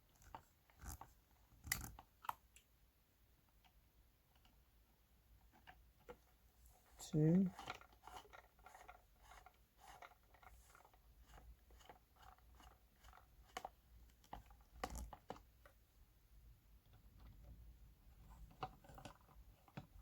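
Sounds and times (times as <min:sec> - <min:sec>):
small parts clicking and knocking: 0:00.1 - 0:02.7, 0:07.1 - 0:15.8.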